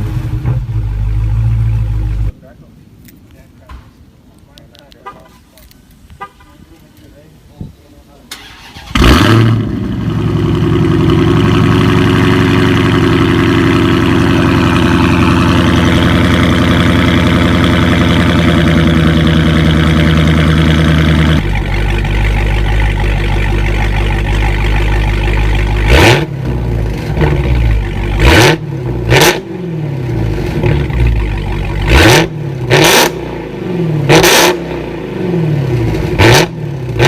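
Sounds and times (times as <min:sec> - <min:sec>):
car engine idling: 0:00.0 - 0:02.4, 0:09.6 - 0:37.0
engine revving: 0:08.4 - 0:37.0.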